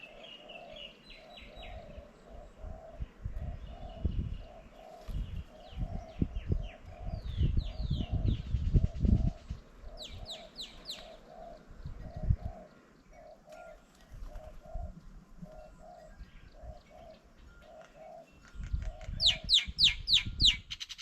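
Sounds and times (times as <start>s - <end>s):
dove cooing: 0.0s - 20.6s
bird whistled calls: 19.0s - 21.0s.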